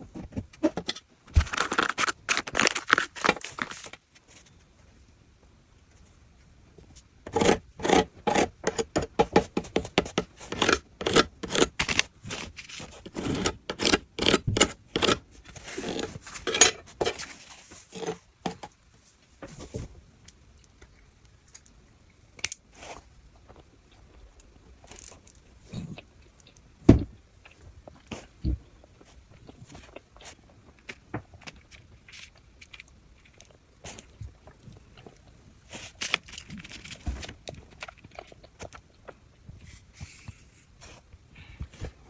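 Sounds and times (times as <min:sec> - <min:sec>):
paper crinkling and scraping: 0:01.3 - 0:04.6, 0:07.3 - 0:18.3, 0:35.7 - 0:38.4.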